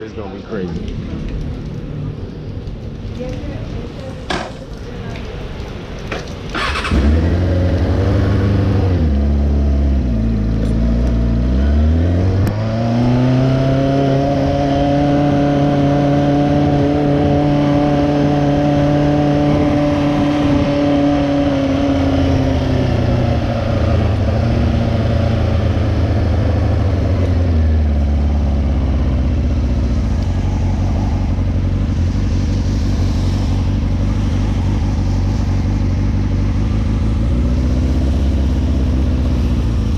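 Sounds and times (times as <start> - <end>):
motorcycle engine running: 21.1 - 39.9.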